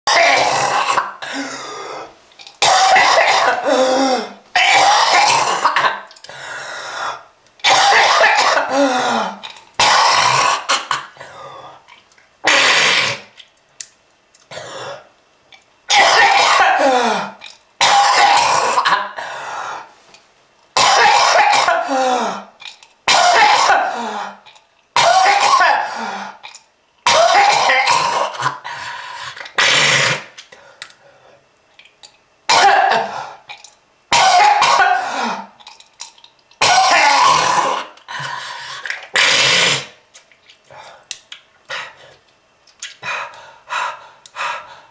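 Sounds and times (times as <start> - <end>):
person coughing: 2.6 - 6.1, 7.6 - 11.2, 15.9 - 19.2, 20.8 - 22.4, 23.1 - 24.4, 25.0 - 26.1, 27.1 - 28.6, 32.5 - 33.2, 34.1 - 35.5, 36.6 - 37.9.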